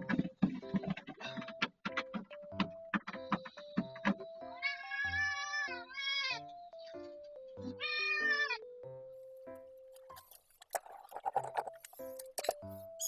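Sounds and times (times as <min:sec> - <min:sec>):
cat meowing: 0:04.6 - 0:06.5, 0:07.8 - 0:08.6.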